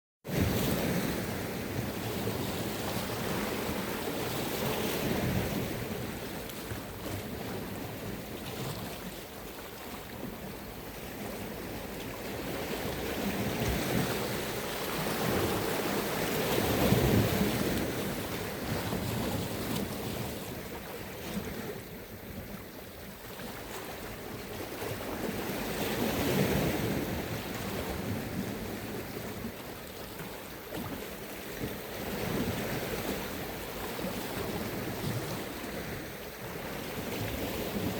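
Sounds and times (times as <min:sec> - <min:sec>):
sea waves washing onto shore: 0:00.3 - 0:37.9.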